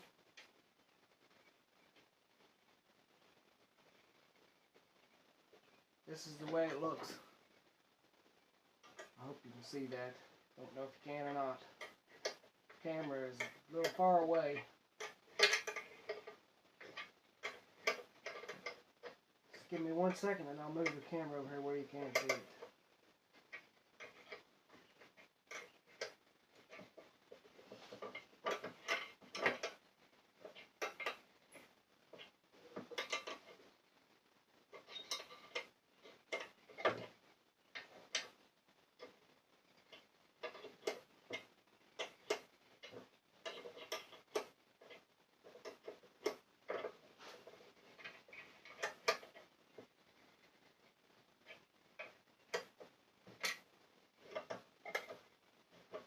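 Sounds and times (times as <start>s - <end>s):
objects clicking and tapping: 11.7s - 20.2s, 23.4s - 33.8s, 34.6s - 38.4s, 39.0s - 56.0s.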